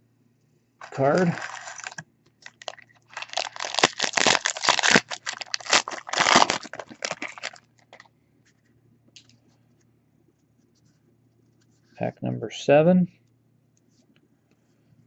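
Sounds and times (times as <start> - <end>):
wrapper crinkling and tearing: 0.8 - 8.1.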